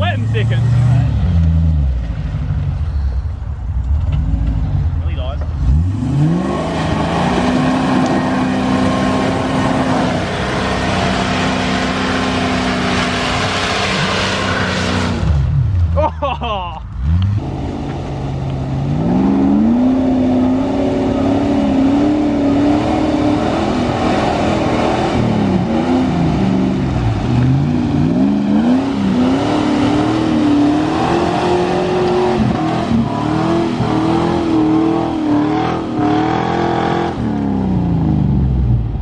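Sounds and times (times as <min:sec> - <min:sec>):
engine revving hard: 0:05.6 - 0:15.4, 0:18.8 - 0:26.8, 0:27.6 - 0:38.2.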